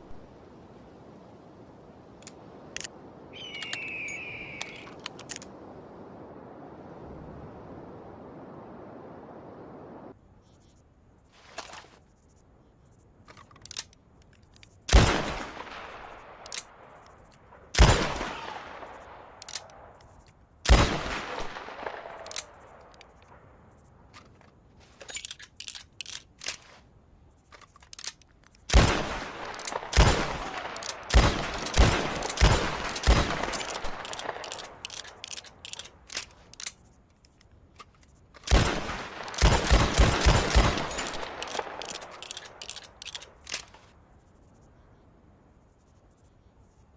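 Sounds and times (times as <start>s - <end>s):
light clicks: 4.6s - 5.6s, 40.8s - 44.7s.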